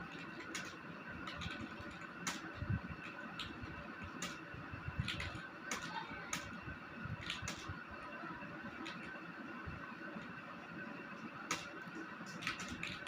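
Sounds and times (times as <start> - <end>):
keyboard keys clicking: 0.0 - 6.5, 7.2 - 7.7, 11.5 - 13.0.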